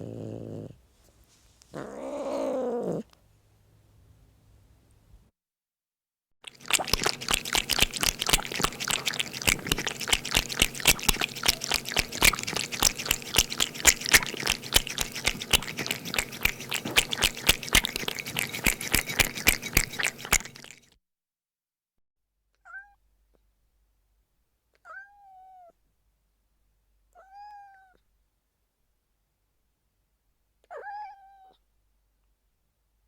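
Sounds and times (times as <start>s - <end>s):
cat lapping milk: 6.5s - 20.8s.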